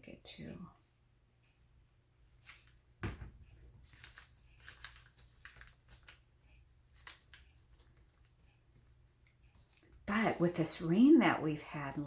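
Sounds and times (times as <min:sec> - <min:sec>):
paper rustling: 0:02.2 - 0:11.1
soft thump: 0:03.0 - 0:03.5.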